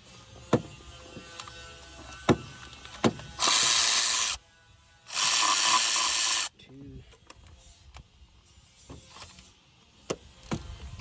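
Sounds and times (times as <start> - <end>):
power tool spinning bolt: 3.4 - 4.4, 5.1 - 6.5.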